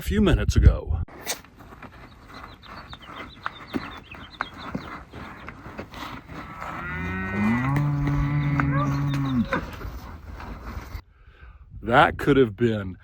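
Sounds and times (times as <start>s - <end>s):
cow mooing: 6.3s - 9.8s.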